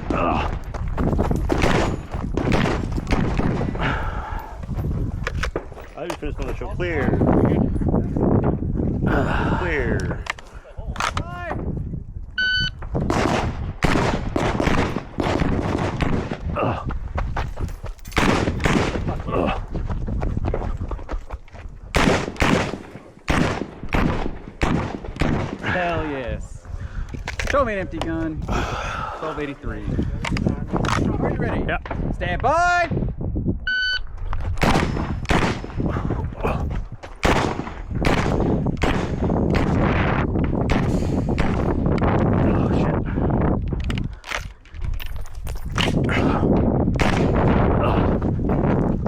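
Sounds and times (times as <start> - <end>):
rifle shots with echo: 1.5 - 3.8, 13.1 - 16.4, 18.2 - 19.1, 22.0 - 25.8, 34.6 - 35.8, 37.2 - 39.9, 40.7 - 41.8, 47.0 - 47.5
electronic start beep: 12.4 - 12.8.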